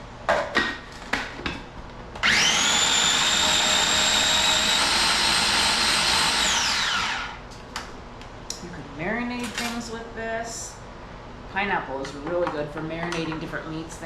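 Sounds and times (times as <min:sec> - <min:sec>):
electric blender motor: 0:02.2 - 0:07.4.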